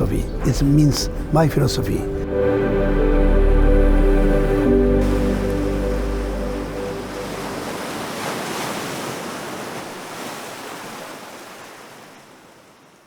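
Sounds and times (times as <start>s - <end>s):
closing music: 0.0s - 7.9s
sea waves washing: 0.0s - 13.0s.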